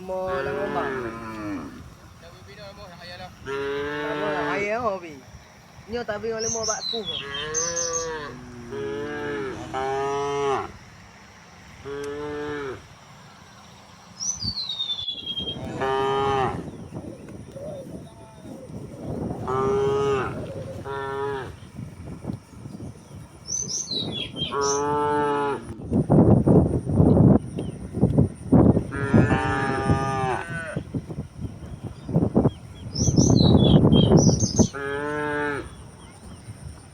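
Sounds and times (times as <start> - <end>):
cows mooing: 0.0 - 2.3, 3.3 - 5.0, 7.0 - 10.9, 11.8 - 13.0, 15.3 - 17.0, 17.6 - 22.3, 23.7 - 25.9, 28.7 - 30.9, 33.2 - 35.9.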